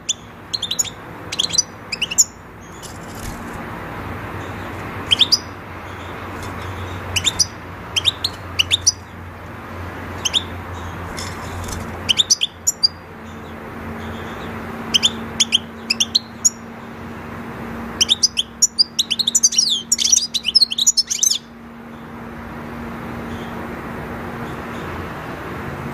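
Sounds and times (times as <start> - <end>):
finches chirping and twittering: 0.0 - 3.7, 4.3 - 17.0, 17.9 - 22.2.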